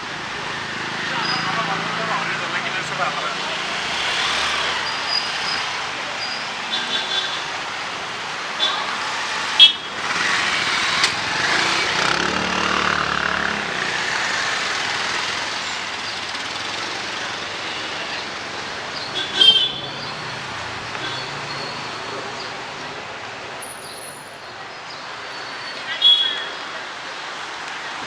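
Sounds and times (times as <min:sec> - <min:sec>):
road traffic noise: 0:00.0 - 0:28.0
vehicle passing: 0:09.1 - 0:17.8.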